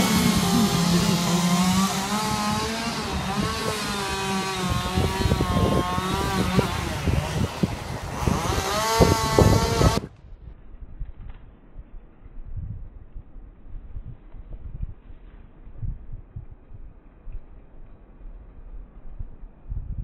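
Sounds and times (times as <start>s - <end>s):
chainsaw revving: 0.0s - 10.1s.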